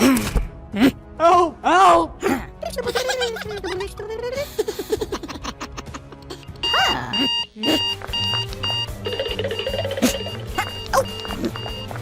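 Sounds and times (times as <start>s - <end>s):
cartoon music: 5.1s - 12.0s
electronic alarm beeping: 6.6s - 12.0s.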